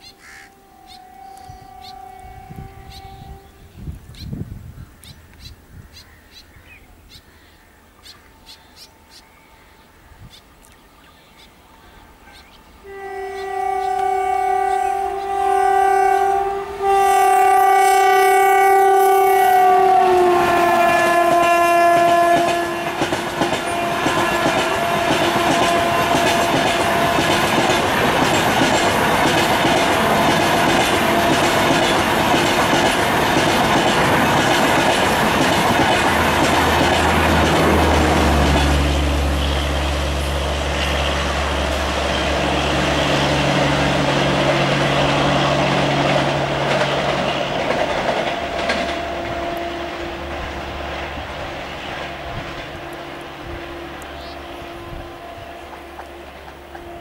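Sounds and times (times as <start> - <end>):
locomotive horn blasts: 0.0 - 3.8, 12.8 - 32.4, 36.2 - 47.2, 48.2 - 50.8, 52.0 - 57.0
train coaches clattering by: 12.9 - 57.0.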